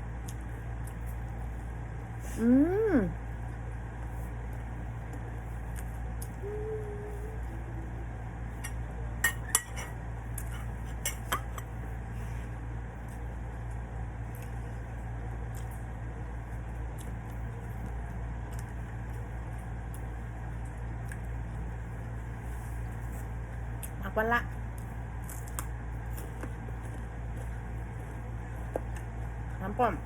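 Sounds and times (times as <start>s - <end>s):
steady low hum: 0.0s - 30.0s
utensils clinking against dishes: 8.6s - 11.7s.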